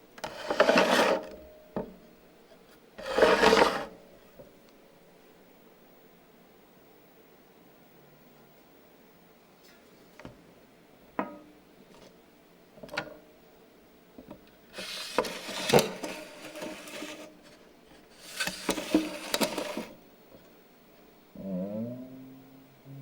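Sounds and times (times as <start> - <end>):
scraping on wooden surface: 0.2 - 1.4, 3.0 - 3.9, 14.8 - 17.6, 18.2 - 20.0.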